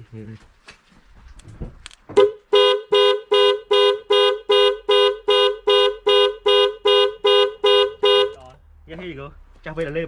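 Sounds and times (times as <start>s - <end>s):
car horn honking: 2.2s - 8.6s.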